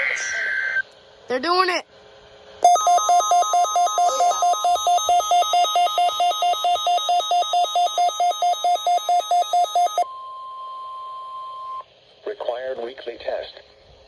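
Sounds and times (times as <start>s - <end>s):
alert receiver beeping rapidly: 2.6s - 10.0s
steady alarm tone: 2.6s - 10.1s.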